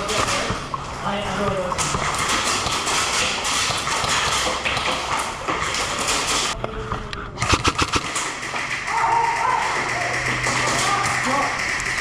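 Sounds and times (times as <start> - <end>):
airsoft taps and clatter: 1.4 - 6.6
sharp clicks: 7.4 - 8.3.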